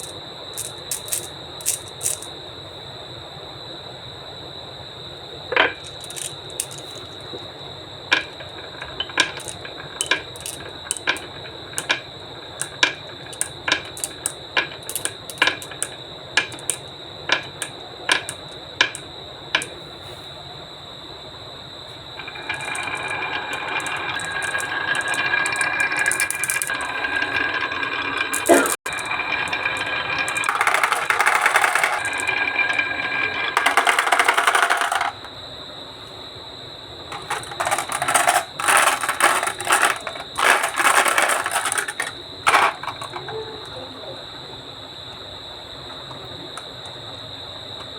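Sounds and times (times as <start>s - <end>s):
balls clacking on wooden ramps: 0.0s - 2.3s, 5.6s - 7.2s, 8.1s - 19.8s, 22.2s - 35.3s, 37.1s - 43.4s
marbles rolling rattle: 0.0s - 2.3s, 5.6s - 7.3s, 8.1s - 19.7s, 22.2s - 35.3s, 37.1s - 43.4s.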